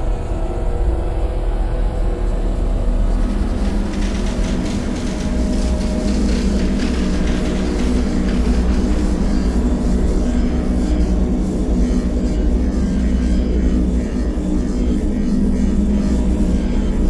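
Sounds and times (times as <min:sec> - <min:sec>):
low rumbling drone: 0:00.0 - 0:17.0
crackling rattling texture: 0:03.4 - 0:09.7.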